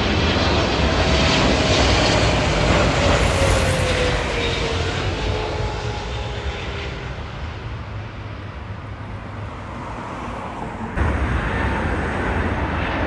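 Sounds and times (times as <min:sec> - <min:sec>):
jet engine whine: 0:00.0 - 0:13.0
jet engines roaring: 0:00.0 - 0:13.0.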